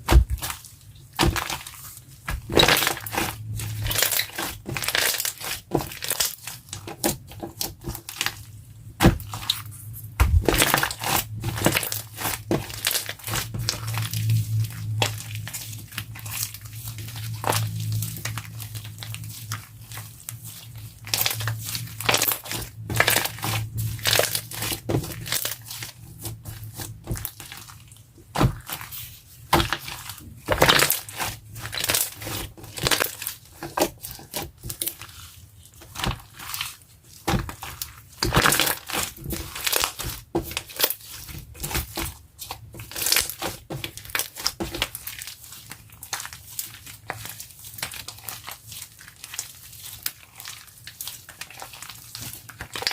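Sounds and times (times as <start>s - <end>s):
crunchy slime crackling pops: 0.0s - 8.4s, 9.0s - 35.2s, 35.8s - 52.9s.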